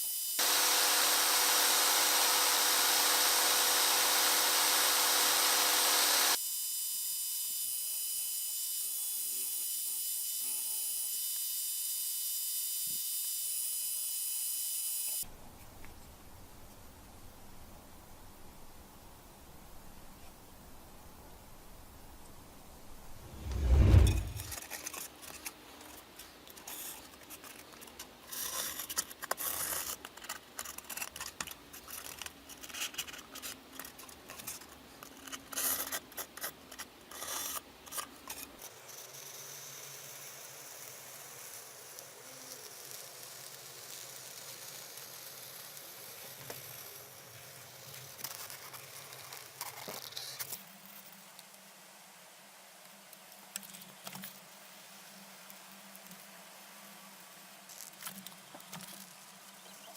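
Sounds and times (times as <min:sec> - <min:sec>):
faint steady hiss: 0:15.1 - 0:30.3, 0:36.6 - 0:59.9
scraping and clicking strokes: 0:23.2 - 0:39.2.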